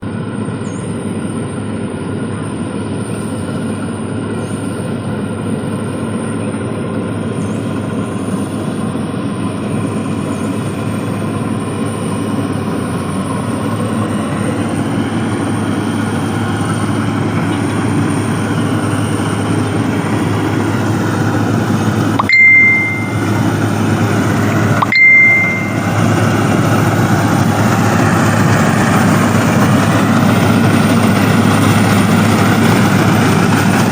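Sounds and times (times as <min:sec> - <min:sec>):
combine harvester engine: 0:00.0 - 0:33.9
loud high beeps: 0:22.2 - 0:23.5, 0:24.8 - 0:26.3.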